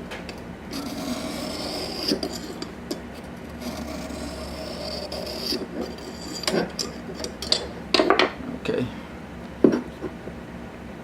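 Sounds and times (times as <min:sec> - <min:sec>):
knife scraping on sharpener: 0:00.7 - 0:07.8.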